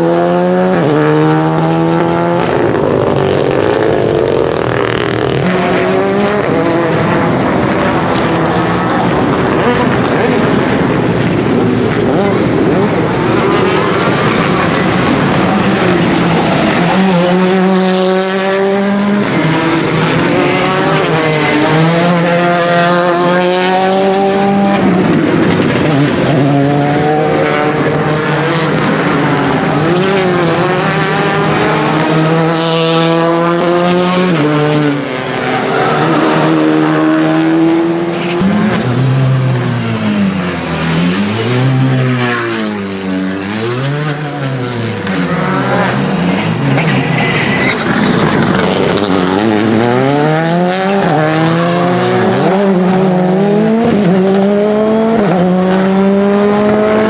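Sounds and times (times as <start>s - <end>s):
rally car engine revving: 0.0s - 57.0s
tyres skidding: 30.9s - 53.1s.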